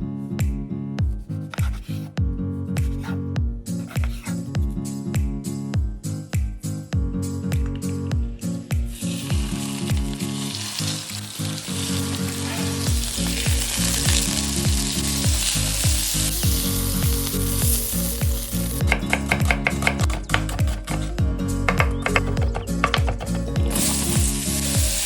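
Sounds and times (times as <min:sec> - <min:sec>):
background music with a beat: 0:00.0 - 0:10.3, 0:12.9 - 0:25.0
fish sizzling in a pan: 0:08.8 - 0:19.5, 0:23.6 - 0:25.0
sharp clicks and taps: 0:18.8 - 0:23.6.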